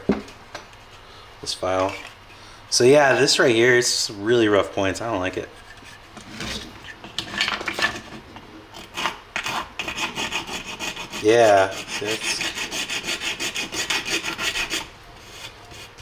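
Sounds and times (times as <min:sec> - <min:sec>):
hand file rasping on plastic: 0:08.7 - 0:16.0.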